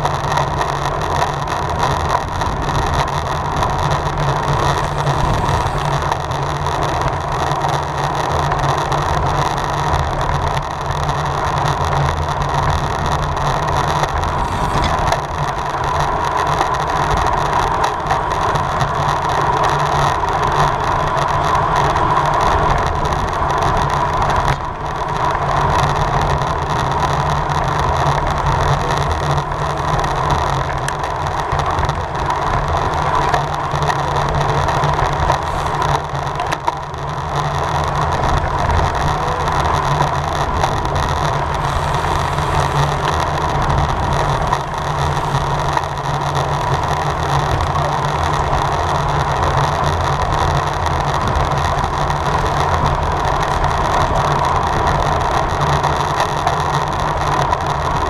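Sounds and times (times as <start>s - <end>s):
bicycle tyres and drivetrain humming: 0.0s - 58.0s
road noise: 0.0s - 58.0s
wind rushing: 2.5s - 7.2s, 14.0s - 16.3s.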